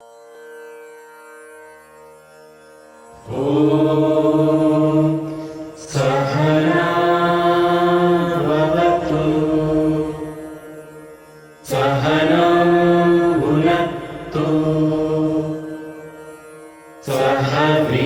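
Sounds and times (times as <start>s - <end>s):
instrumental drone: 3.1s - 18.0s
person singing long notes: 3.2s - 16.2s.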